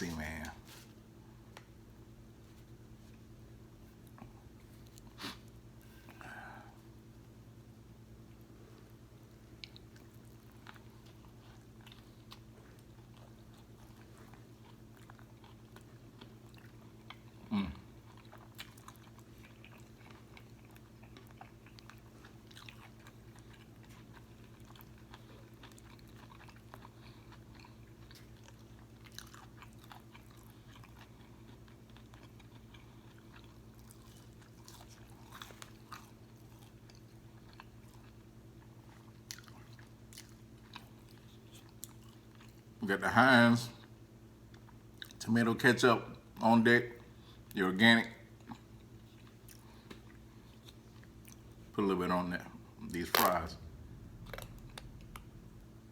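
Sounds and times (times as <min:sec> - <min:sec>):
steady low hum: 0:00.0 - 0:55.9
chewing crispy food: 0:08.2 - 0:43.1, 0:43.8 - 0:45.4, 0:46.1 - 0:51.8.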